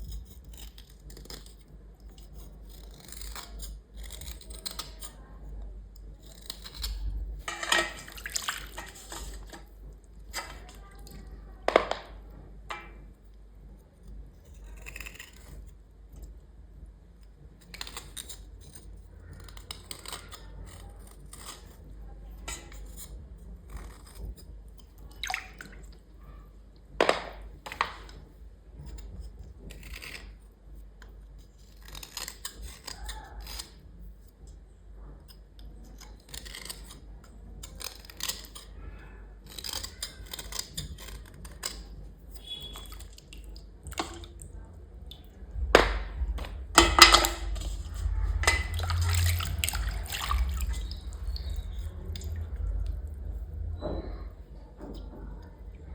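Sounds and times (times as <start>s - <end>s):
dishes and utensils clinking: 7.5s - 9.6s, 45.8s - 51.6s
sharp knocks: 45.7s - 51.2s
water splashing and running: 48.4s - 52.3s.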